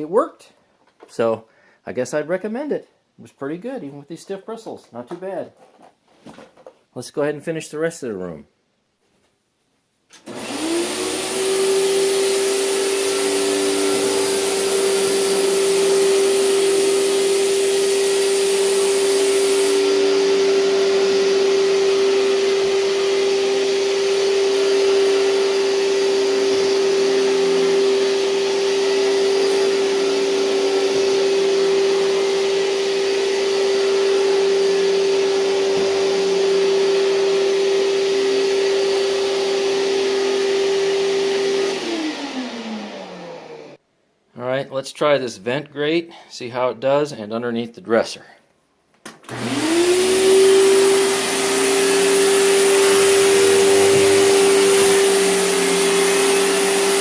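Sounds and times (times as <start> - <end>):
vacuum cleaner motor whining: 10.2 - 43.8, 49.2 - 57.0.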